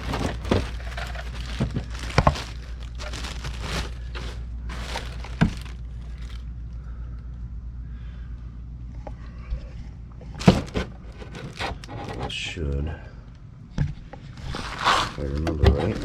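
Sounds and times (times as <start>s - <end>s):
packaging rustling: 0.0s - 6.5s, 10.3s - 12.3s
steady low hum: 0.0s - 16.0s.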